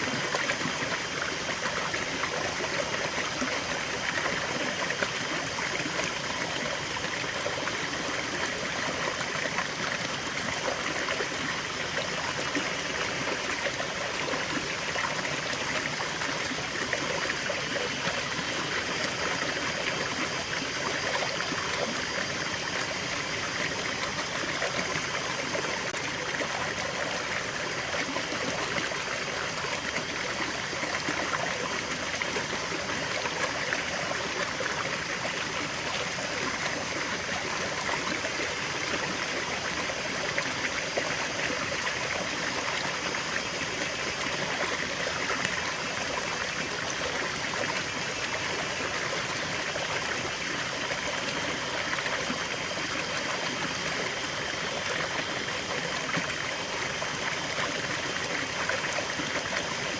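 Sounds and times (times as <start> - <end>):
stream trickling over stones: 0.0 - 59.9.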